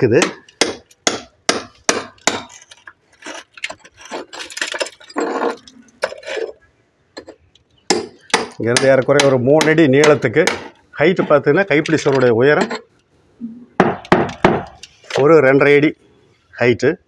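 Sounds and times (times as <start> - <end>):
hammer striking concrete: 0.2 - 2.6, 7.9 - 11.3, 13.8 - 14.8.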